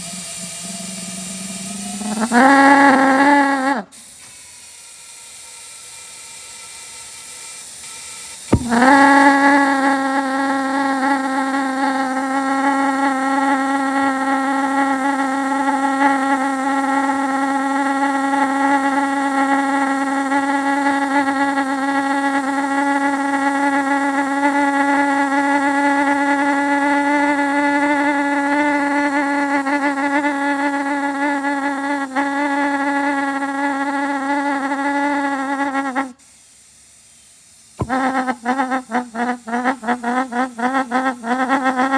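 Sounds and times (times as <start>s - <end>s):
pulse jet buzzing drone: 0.0s - 3.9s, 8.5s - 35.7s.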